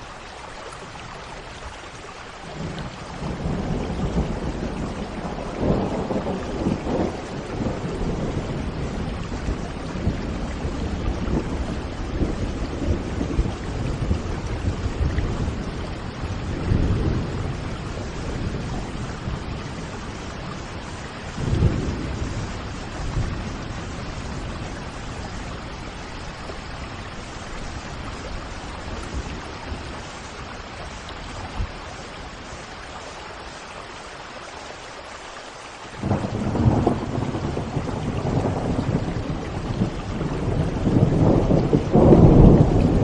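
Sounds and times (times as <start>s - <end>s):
steady rain hiss: 0.0s - 43.0s
thunder rumbling: 2.5s - 32.7s, 36.0s - 43.0s.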